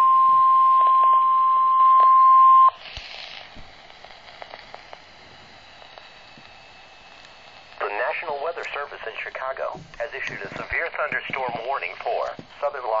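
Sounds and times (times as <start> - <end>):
steady alarm tone: 0.0 - 2.8
faint radio hiss: 2.7 - 13.0.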